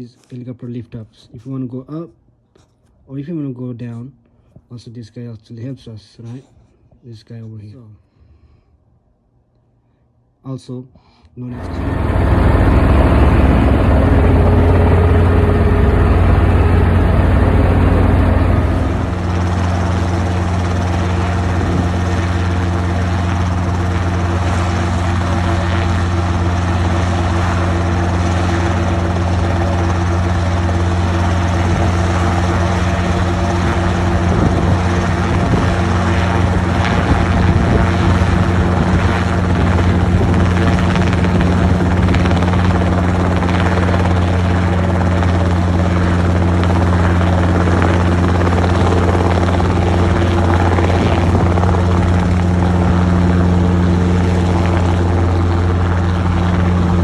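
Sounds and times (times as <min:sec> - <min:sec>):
helicopter drone: 0:11.5 - 0:57.0.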